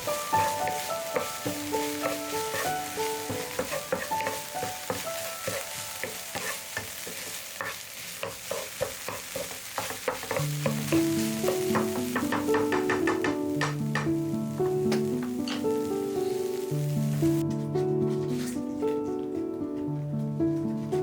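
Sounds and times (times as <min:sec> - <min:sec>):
plucked piano-like music: 0:00.0 - 0:07.7, 0:09.9 - 0:21.0
utensil scraping a pan: 0:00.0 - 0:13.0
food sizzling in a frying pan: 0:00.0 - 0:17.4.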